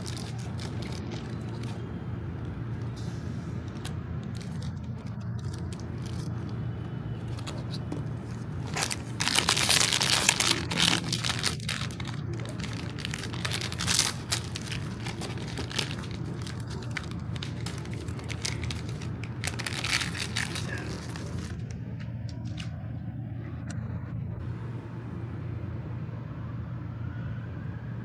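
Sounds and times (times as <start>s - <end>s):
packaging crinkling and tearing: 0.0s - 21.7s
steady low hum: 0.0s - 26.9s.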